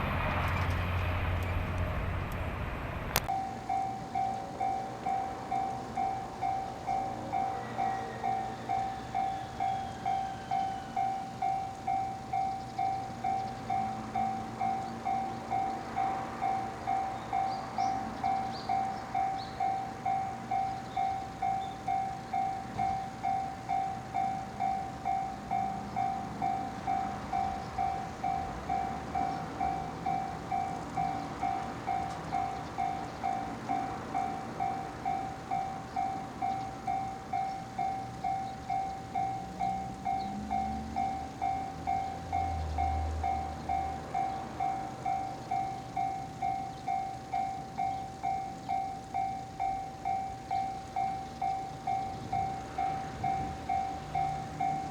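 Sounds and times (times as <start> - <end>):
faint low rumble: 0.0 - 6.6
level-crossing warning bell: 3.2 - 54.9.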